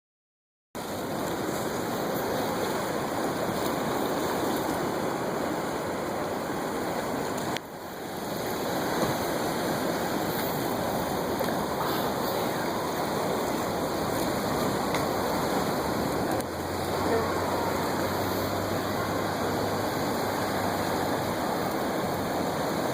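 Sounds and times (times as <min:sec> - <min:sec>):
ocean surf rushing: 0:00.8 - 0:22.9.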